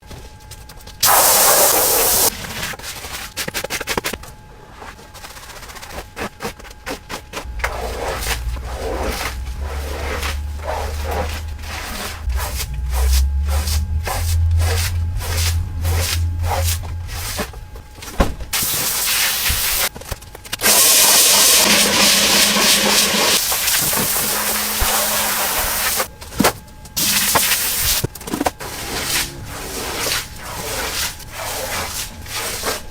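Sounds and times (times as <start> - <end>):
spraying hiss: 1.0 - 2.3, 20.6 - 26.1
rubbing and scrubbing strokes: 6.9 - 17.6, 20.6 - 26.1, 28.6 - 32.9
cleaning machine motor humming: 7.4 - 19.9, 20.6 - 26.1.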